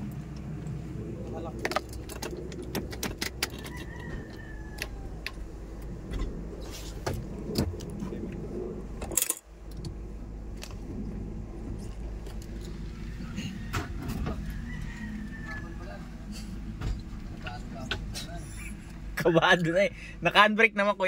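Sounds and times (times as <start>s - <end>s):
car engine idling: 0.0s - 21.0s
keys clicking and rattling: 9.0s - 9.4s.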